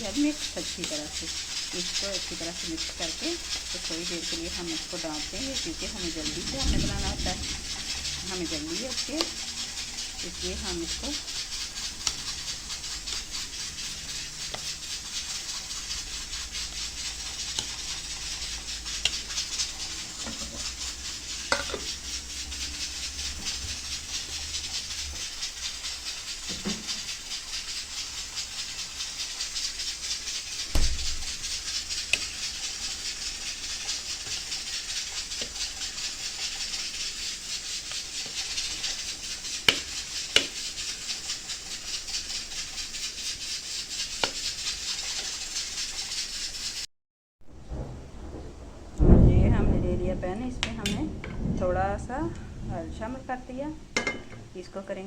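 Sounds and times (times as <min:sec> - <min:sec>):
utensil clinking on cookware: 0:00.0 - 0:25.2, 0:26.0 - 0:27.3, 0:37.9 - 0:42.8, 0:54.0 - 0:54.5
steady kitchen hiss: 0:00.0 - 0:46.9, 0:47.5 - 0:55.0
loud knock: 0:30.7 - 0:31.3.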